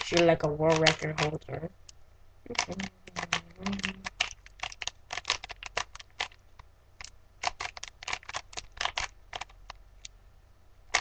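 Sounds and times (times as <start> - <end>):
plastic puzzle cube clicking: 0.0 - 1.4, 2.5 - 6.4, 7.0 - 10.1.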